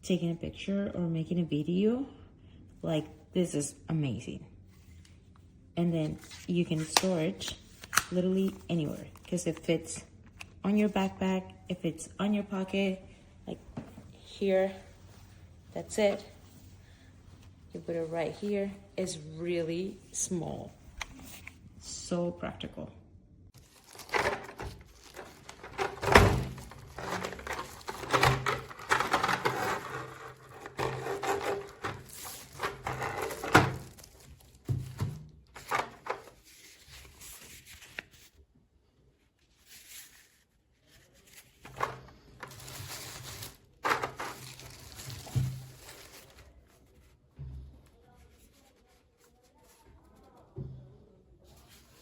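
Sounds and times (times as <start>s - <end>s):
rustling: 39.5s - 47.2s.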